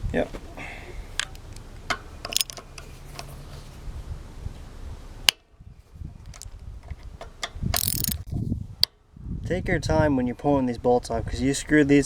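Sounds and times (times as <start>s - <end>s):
hand tools clicking and knocking: 1.2s - 3.3s, 6.3s - 8.3s
socket wrench loosening bolts: 1.2s - 3.3s, 6.2s - 8.3s.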